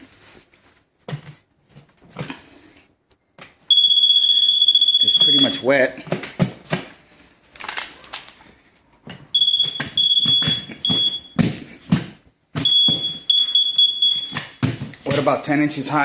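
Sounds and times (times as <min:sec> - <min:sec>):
moisture meter high-pitched tone: 0:03.7 - 0:05.7, 0:09.4 - 0:11.4, 0:12.6 - 0:14.6.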